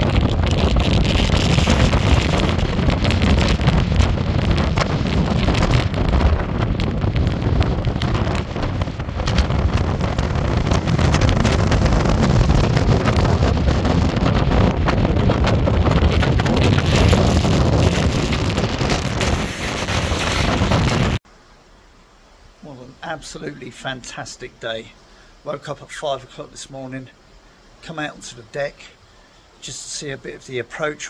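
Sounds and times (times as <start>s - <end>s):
wind buffeting microphone: 0.0s - 21.2s.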